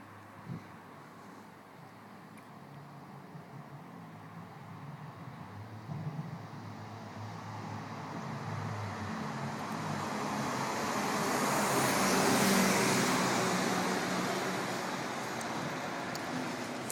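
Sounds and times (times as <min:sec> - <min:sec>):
car engine passing: 0:07.2 - 0:16.9.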